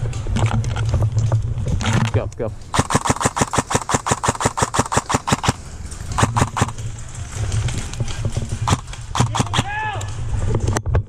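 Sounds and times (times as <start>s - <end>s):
airsoft rifle full auto clicks: 2.7s - 5.6s, 6.2s - 6.8s, 8.7s - 9.7s.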